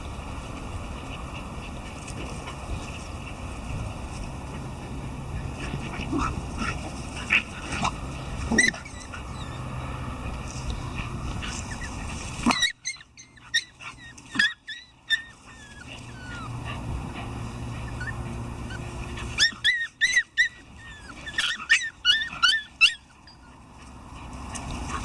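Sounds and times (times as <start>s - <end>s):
dog yipping and whimpering: 7.2s - 9.9s, 11.4s - 16.9s, 17.7s - 23.9s.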